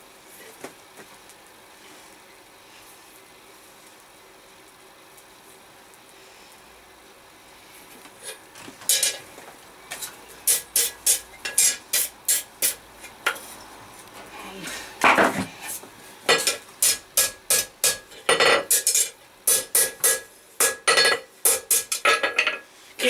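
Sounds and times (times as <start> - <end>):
hammer ringing on steel bar: 18.7 - 22.1.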